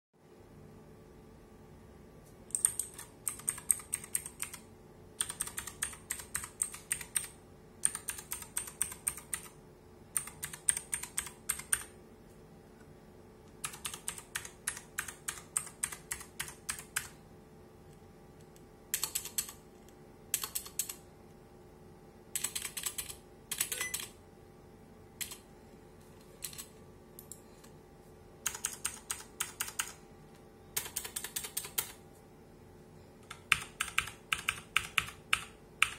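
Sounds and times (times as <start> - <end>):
mechanical keyboard typing: 2.5 - 12.0, 13.6 - 17.2, 18.9 - 19.6, 20.3 - 21.0, 22.4 - 24.2, 25.2 - 25.5, 26.4 - 26.7, 28.4 - 30.0, 30.8 - 32.0, 33.2 - 35.9.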